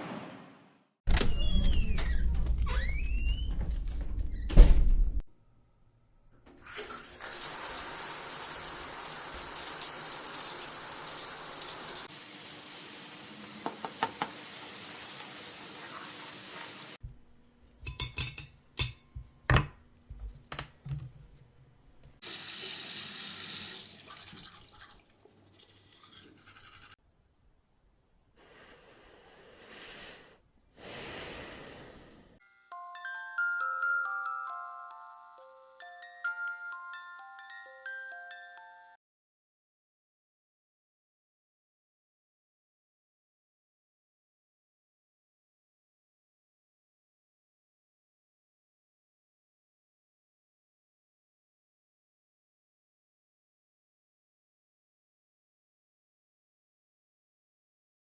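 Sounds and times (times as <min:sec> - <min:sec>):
water running from a tap: 0:06.7 - 0:17.0, 0:22.2 - 0:27.0.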